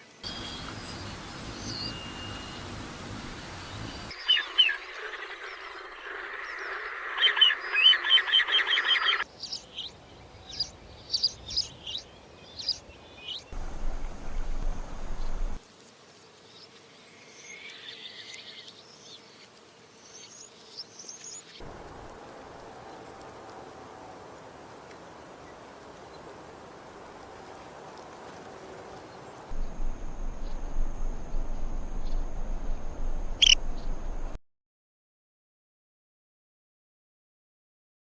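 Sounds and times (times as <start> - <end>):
songbirds chirping: 0.0 - 34.4
hiss and low rumble: 0.3 - 4.1, 13.6 - 15.6, 21.6 - 34.4.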